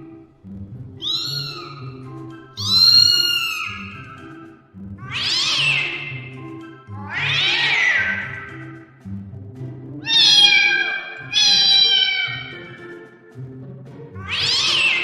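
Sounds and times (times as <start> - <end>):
background music: 0.0 - 15.0
cat meowing: 1.0 - 1.9, 2.6 - 4.1, 5.0 - 6.2, 7.0 - 8.5, 10.0 - 12.8, 14.2 - 15.0.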